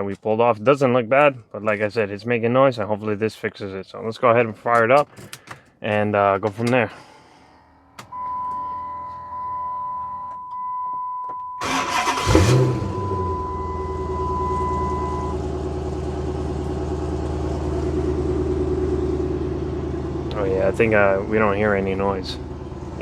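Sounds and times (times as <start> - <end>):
engine cranking: 11.6 - 13.3
car engine idling: 11.6 - 23.0
high electronic warning tone: 12.4 - 15.5.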